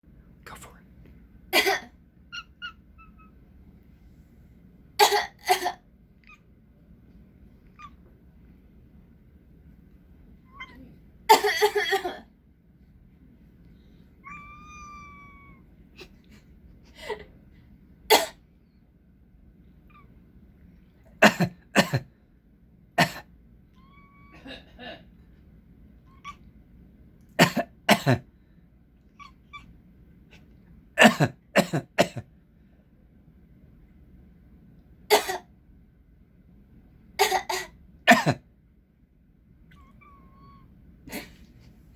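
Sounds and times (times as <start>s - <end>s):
person coughing: 1.6s - 2.0s, 5.0s - 5.8s, 11.3s - 12.3s, 21.2s - 22.1s, 23.0s - 23.3s, 27.4s - 28.3s, 31.0s - 32.3s, 37.2s - 38.4s
cat squeaking: 2.3s - 3.4s, 7.7s - 8.0s, 10.5s - 10.9s, 14.2s - 15.6s, 23.8s - 24.4s, 26.0s - 26.5s, 29.2s - 29.7s, 39.7s - 40.7s.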